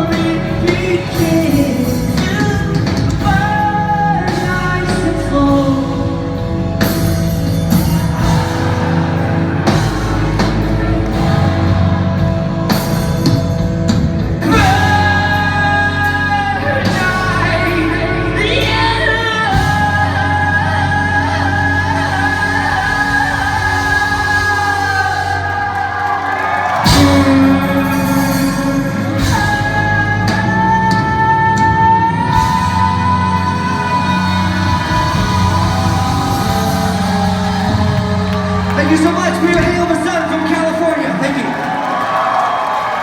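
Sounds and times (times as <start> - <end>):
person singing: 0.0 - 7.1, 14.4 - 26.0, 26.8 - 41.5
rock band playing live: 0.0 - 43.0.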